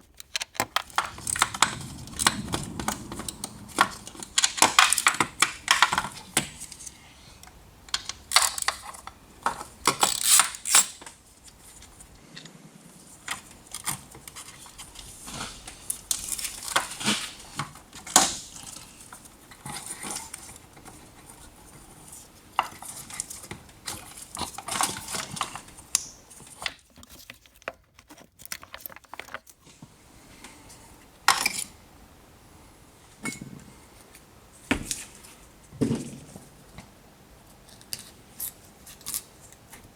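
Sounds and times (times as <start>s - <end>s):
tools and metal parts clinking: 0.1s - 12.2s.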